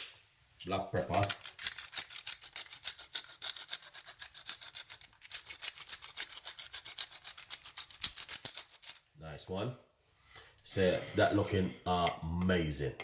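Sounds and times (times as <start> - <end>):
pepper mill grinding: 1.0 - 9.0.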